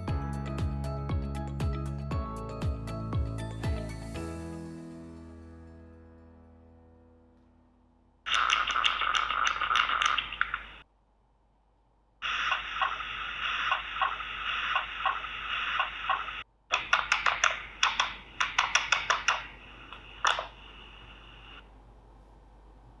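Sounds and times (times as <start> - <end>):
mechanical hiss with clicks: 12.2 - 21.6.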